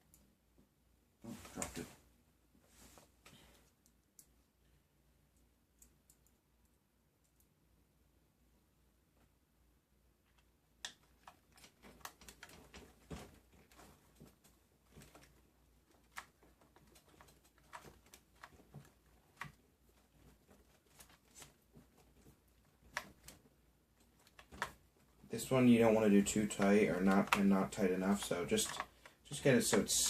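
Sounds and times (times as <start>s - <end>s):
screwdriver clicking on plastic parts: 26.5s - 30.0s.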